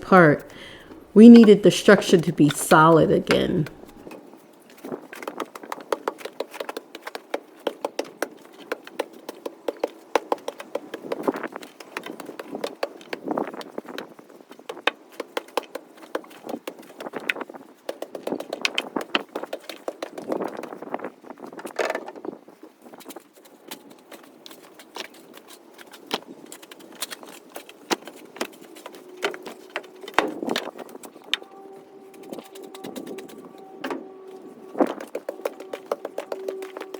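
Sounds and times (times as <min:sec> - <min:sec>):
sharp irregular knocks and clicks: 0:34.7 - 0:36.9.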